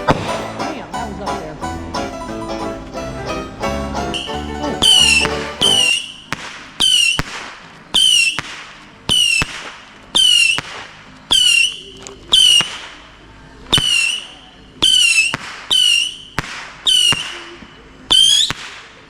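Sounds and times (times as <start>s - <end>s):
firework bangs and pops: 0.0s - 0.6s, 4.8s - 13.1s, 13.7s - 19.0s
firework whistling shots: 4.2s - 19.0s.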